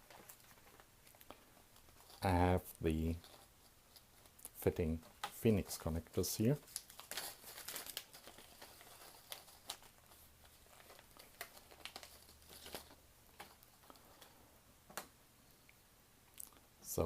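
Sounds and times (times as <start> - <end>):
small parts clicking and rustling: 10.6 - 14.3.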